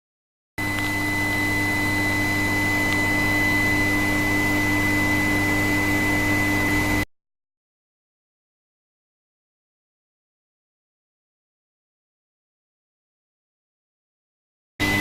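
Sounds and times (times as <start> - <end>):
electrical hum with high whine: 0.6 - 7.1, 14.8 - 15.0.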